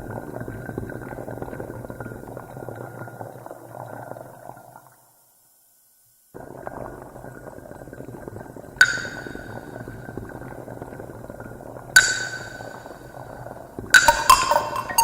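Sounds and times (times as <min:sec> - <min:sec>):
ringing taps on mug: 0:14.0 - 0:15.0.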